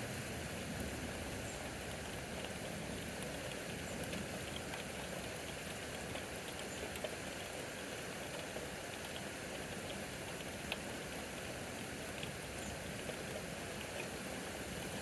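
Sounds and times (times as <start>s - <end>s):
faint ticks of raindrops: 0.0s - 15.0s
steady rain: 0.0s - 15.0s.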